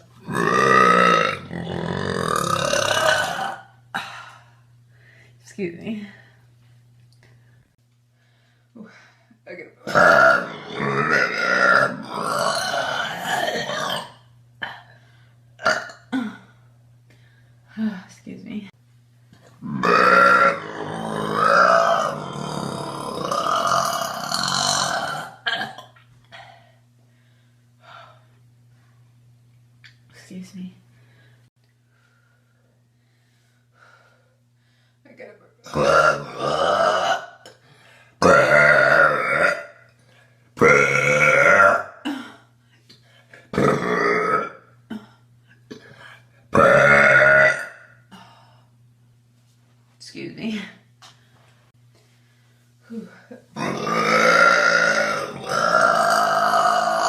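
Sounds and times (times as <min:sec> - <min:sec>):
woman burping: 0:00.2 - 0:04.3, 0:09.8 - 0:14.9, 0:15.6 - 0:16.5, 0:19.6 - 0:26.0, 0:35.6 - 0:37.6, 0:38.2 - 0:39.8, 0:40.6 - 0:42.4, 0:43.5 - 0:47.9, 0:52.9 - 0:57.0.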